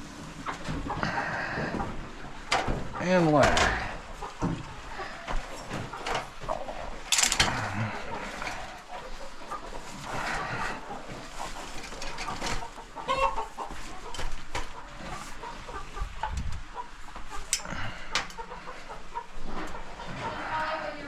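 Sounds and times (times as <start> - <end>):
chickens clucking: 0.0 - 21.0
knocks and scraping: 0.3 - 13.0.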